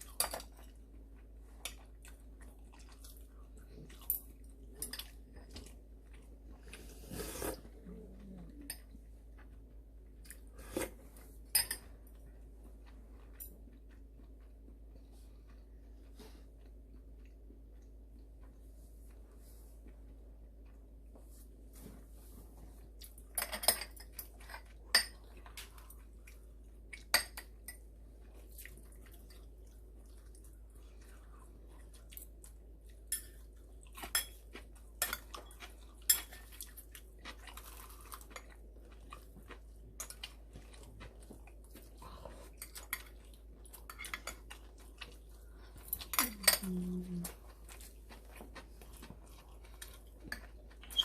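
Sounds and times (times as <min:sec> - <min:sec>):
quiet chewing: 0:00.0 - 0:51.0
utensils clinking against dishes: 0:23.4 - 0:25.2.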